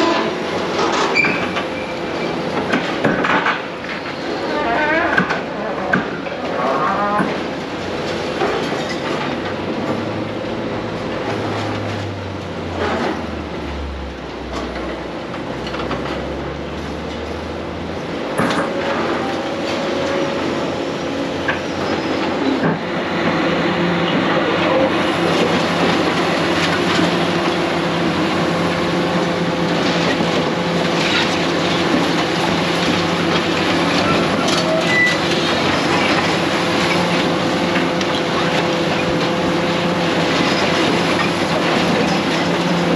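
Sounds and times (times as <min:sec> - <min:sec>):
diesel engine under load: 0:00.0 - 0:42.9
metal squeals: 0:34.0 - 0:35.5.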